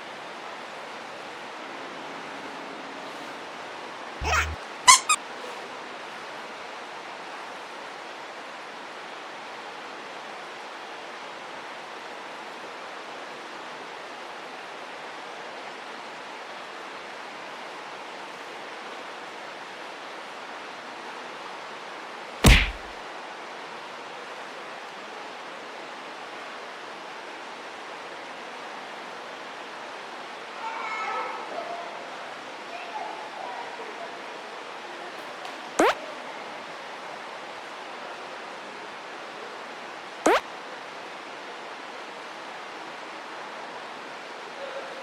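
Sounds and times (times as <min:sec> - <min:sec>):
loud short knock: 0:22.4 - 0:22.9.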